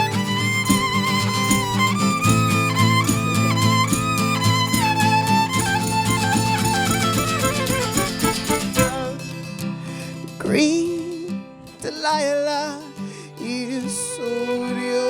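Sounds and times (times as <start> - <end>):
violin melody: 0.0 - 9.2, 13.4 - 15.0
guitar accompaniment: 0.0 - 15.0.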